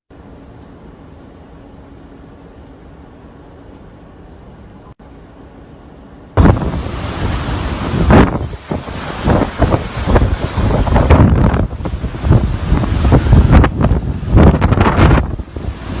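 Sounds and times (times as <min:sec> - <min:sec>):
low rumbling noise: 0:00.1 - 0:16.0
wind gusts buffeting microphone: 0:06.4 - 0:16.0.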